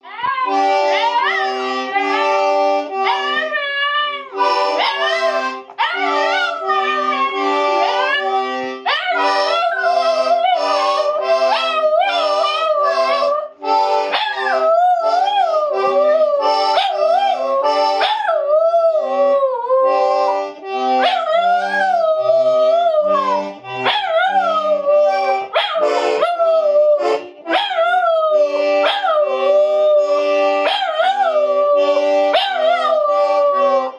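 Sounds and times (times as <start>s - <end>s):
dog howling: 4.8s - 6.9s, 8.9s - 13.5s, 14.1s - 19.9s, 21.0s - 33.9s.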